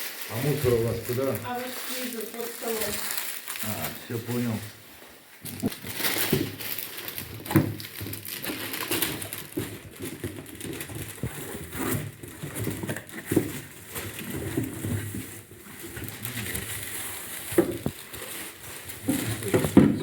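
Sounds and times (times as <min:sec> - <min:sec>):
packaging rustling and tearing: 0:00.0 - 0:04.8, 0:05.4 - 0:20.0.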